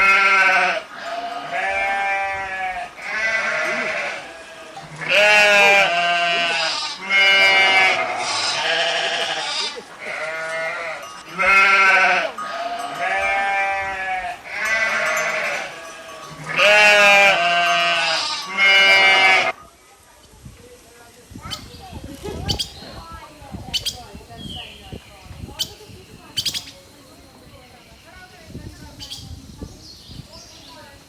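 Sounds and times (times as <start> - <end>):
sheep bleating: 0.0 - 19.6.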